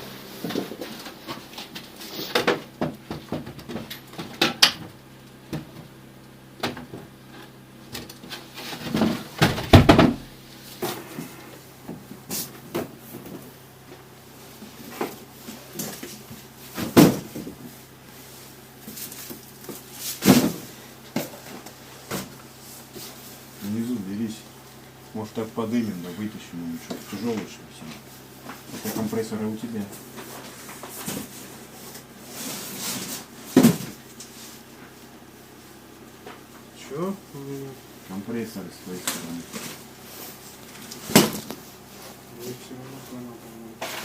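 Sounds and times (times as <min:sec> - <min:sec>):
steady low hum: 0:00.0 - 0:44.0
knocks and clunks: 0:08.8 - 0:10.3.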